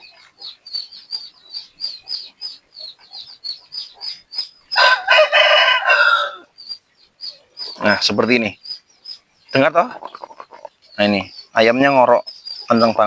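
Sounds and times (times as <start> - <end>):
high-pitched chirping: 0.0 - 13.0
rooster crowing: 4.7 - 6.5.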